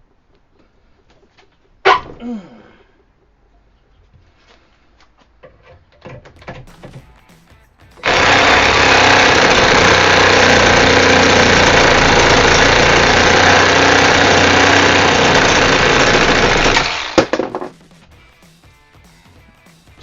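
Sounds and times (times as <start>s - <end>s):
reciprocating saw motor running: 8.0s - 17.4s.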